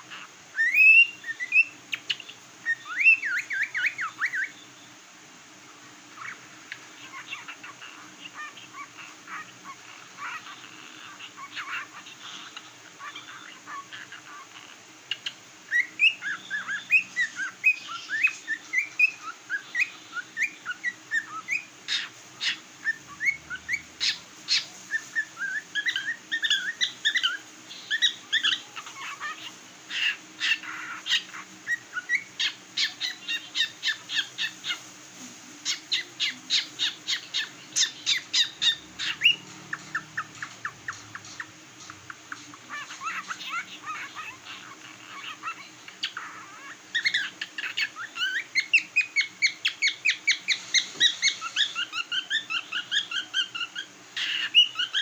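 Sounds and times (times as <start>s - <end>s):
cockatiel chirping and whistling: 0.2s - 4.6s, 15.2s - 34.8s, 35.6s - 41.5s, 42.7s - 55.0s.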